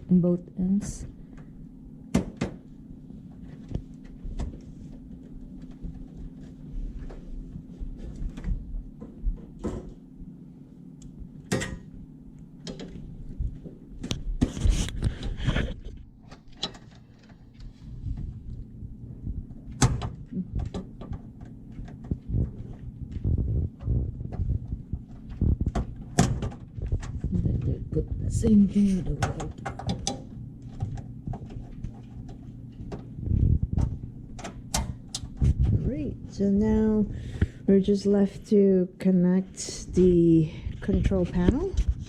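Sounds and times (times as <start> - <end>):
low steady hum: 0.0 - 42.0
clicks and knocks handling oven parts: 29.1 - 33.1.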